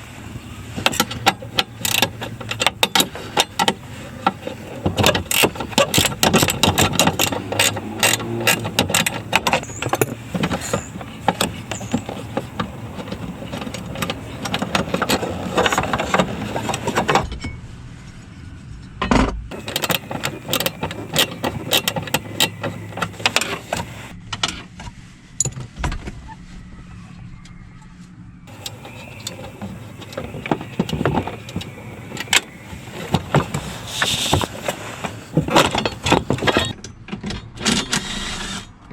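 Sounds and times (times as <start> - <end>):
hand tools clicking and clinking: 0.8 - 17.3, 19.5 - 24.1, 35.4 - 37.0
plastic trim rattling loose: 0.9 - 17.2.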